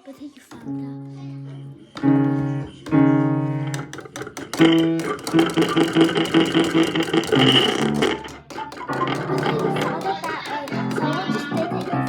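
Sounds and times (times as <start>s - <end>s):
plucked guitar-like notes: 0.6s - 12.0s.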